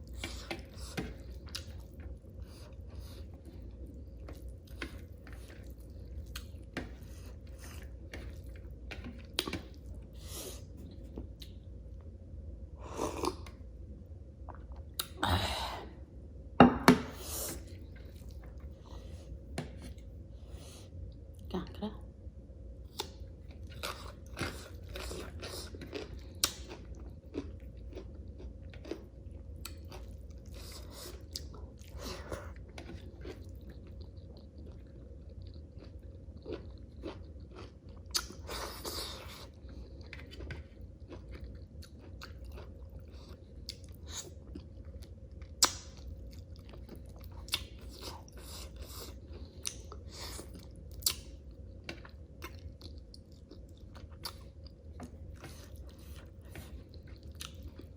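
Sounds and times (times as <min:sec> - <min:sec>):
chewing crunchy cucumber: 0:22.9 - 0:57.9.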